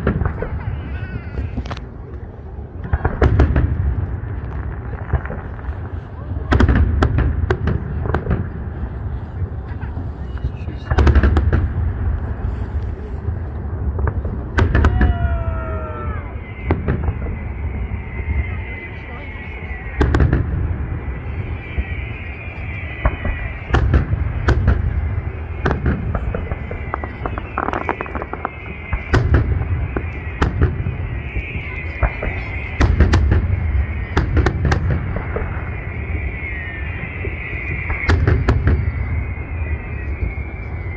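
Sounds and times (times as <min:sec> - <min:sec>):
continuous low rumble: 0:00.0 - 0:40.9
firework bangs: 0:00.0 - 0:40.9
falling whistle tone: 0:14.8 - 0:40.9.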